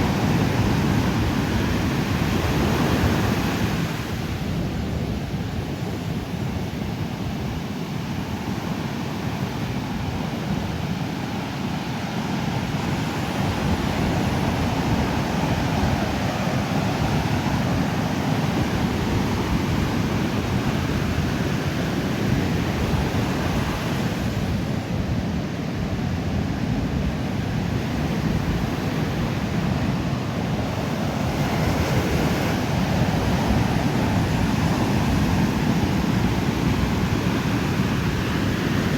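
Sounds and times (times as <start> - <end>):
surf washing on sandy beach: 0.0 - 38.9
wind rumble on microphone: 0.0 - 38.9.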